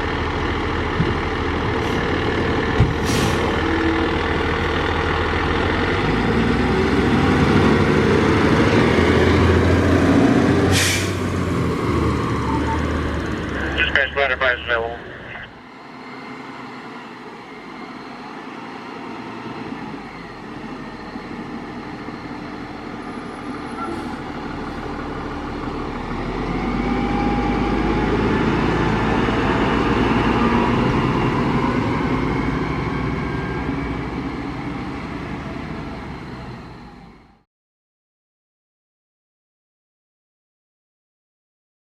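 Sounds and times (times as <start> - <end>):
fire truck diesel engine running: 0.0 - 37.4.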